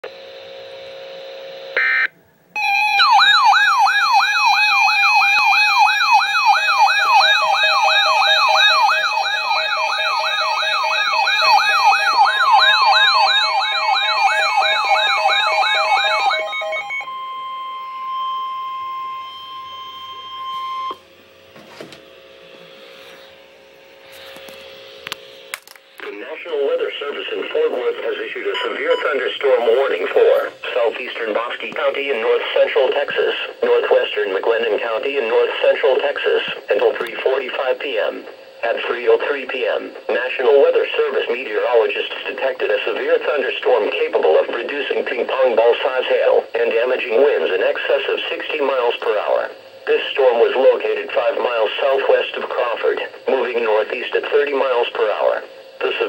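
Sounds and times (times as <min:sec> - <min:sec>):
electronic wailing siren: 0:01.8 - 0:21.1
steady alert tones: 0:02.6 - 0:21.0
steady beeping tones: 0:02.6 - 0:21.0, 0:26.7 - 0:31.2.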